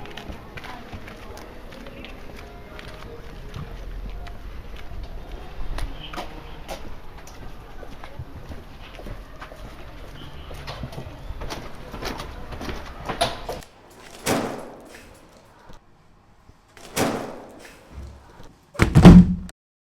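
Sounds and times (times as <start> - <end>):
busy clattering: 13.6 - 15.7, 16.7 - 19.5
loud deep door slam: 14.0 - 15.4, 16.8 - 18.2, 18.8 - 19.5.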